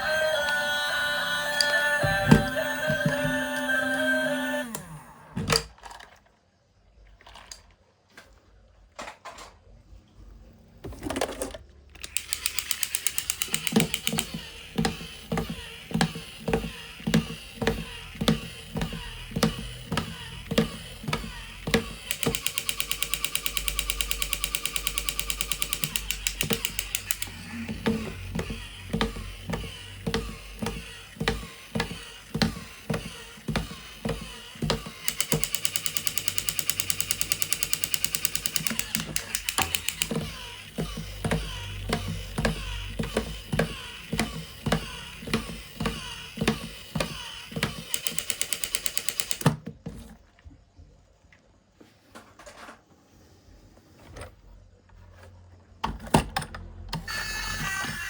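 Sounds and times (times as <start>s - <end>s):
toy vehicle mechanical rattle: 11.1s - 49.5s
handling clicks: 12.0s - 49.5s.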